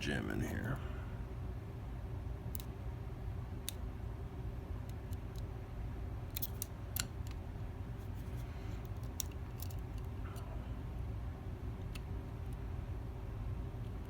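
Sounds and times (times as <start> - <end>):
steady low hum: 0.0 - 14.0
metallic clicks of lock picking: 6.3 - 7.4.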